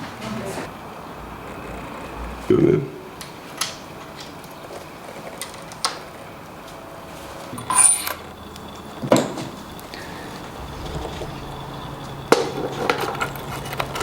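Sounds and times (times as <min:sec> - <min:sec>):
metallic clatter and ring: 0:07.4 - 0:09.7.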